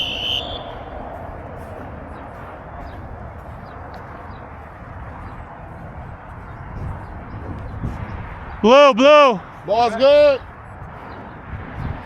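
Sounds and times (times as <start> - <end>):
referee's whistle: 0.0 - 0.8
faint outdoor field noise: 0.0 - 12.0
wind rumble on microphone: 0.0 - 12.0.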